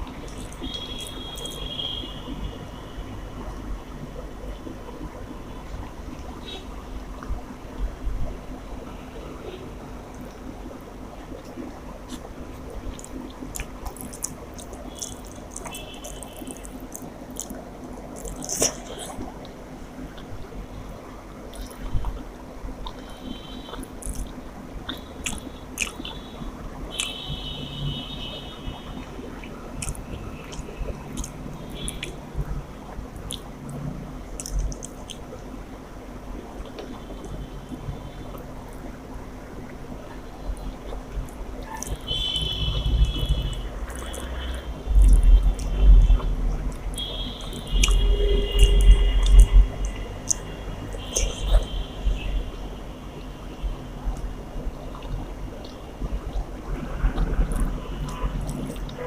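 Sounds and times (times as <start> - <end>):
wet chewing mouth smacks: 12.9 - 19.3, 23.7 - 24.3, 24.9 - 26.2, 29.8 - 32.2, 33.2 - 33.5, 34.4 - 35.3, 45.0 - 45.8, 46.7 - 51.8, 57.2 - 59.0.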